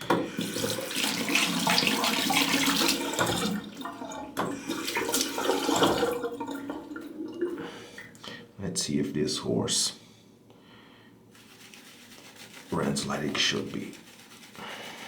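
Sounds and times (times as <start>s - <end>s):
tap water splashing into sink: 0.0s - 8.1s.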